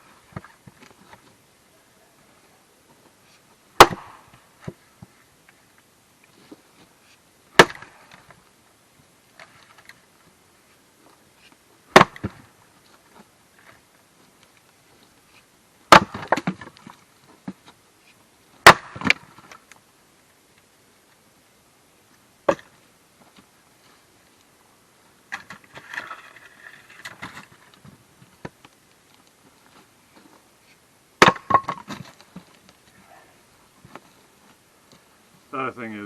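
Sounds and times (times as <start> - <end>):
wood splitting and clattering: 3.8 - 4.2, 7.6 - 8.4, 11.9 - 12.4, 15.9 - 17.6, 18.6 - 19.5, 31.2 - 32.6
axe striking wood: 3.8 - 4.3, 7.6 - 8.2, 11.9 - 12.4, 15.9 - 16.7, 18.6 - 19.3, 22.5 - 22.7, 31.2 - 32.0.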